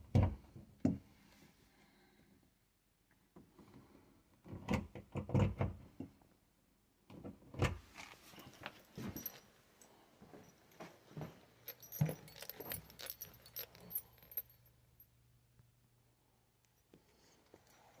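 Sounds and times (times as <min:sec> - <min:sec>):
metal tools clinking and jingling: 0:08.3 - 0:14.8.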